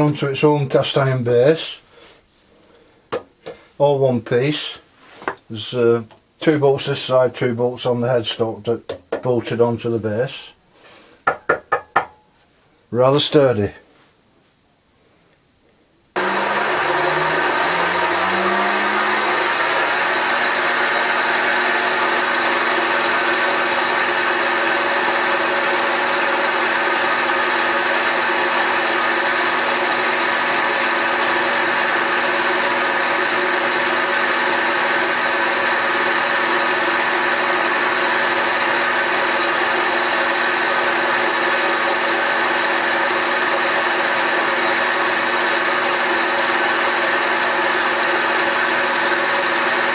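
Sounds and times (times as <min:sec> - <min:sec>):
lathe motor running: 0:16.2 - 0:49.9.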